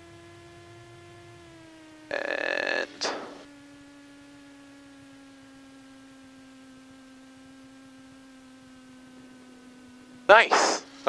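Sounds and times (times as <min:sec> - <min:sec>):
faint humming tone: 0:00.0 - 0:11.0.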